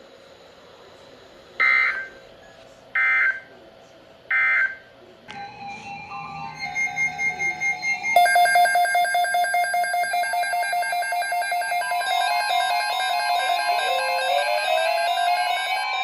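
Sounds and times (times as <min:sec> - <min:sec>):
held electronic notes: 0:05.3 - 0:16.0
rapid electronic beeping: 0:05.4 - 0:16.0.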